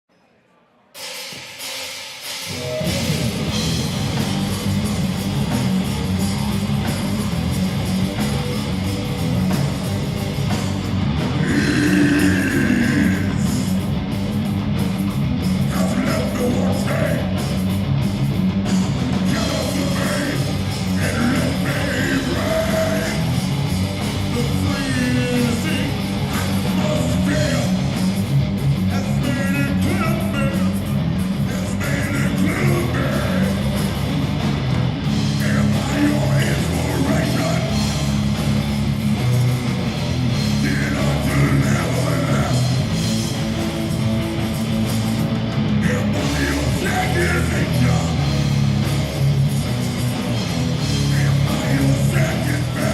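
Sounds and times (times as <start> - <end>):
live rock band playing: 1.0 - 52.9
loud electric guitar: 1.0 - 52.9.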